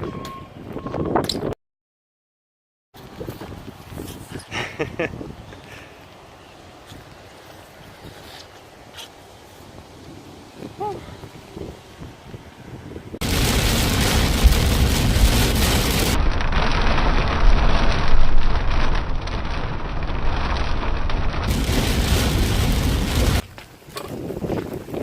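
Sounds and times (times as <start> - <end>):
wind buffeting microphone: 3.0 - 5.8, 9.7 - 25.0
heavy low rumble: 13.2 - 23.4.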